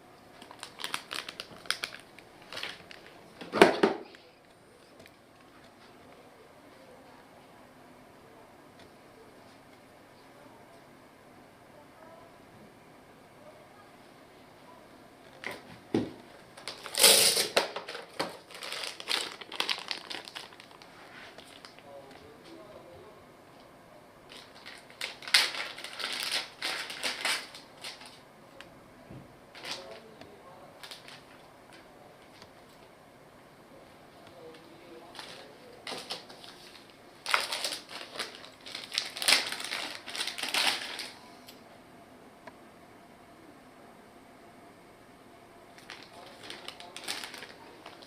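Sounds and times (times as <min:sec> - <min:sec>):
packaging crinkling: 0:00.3 - 0:04.3, 0:16.5 - 0:22.2, 0:24.3 - 0:28.2, 0:29.5 - 0:30.1, 0:30.8 - 0:32.4, 0:35.0 - 0:41.2, 0:45.7 - 0:48.0.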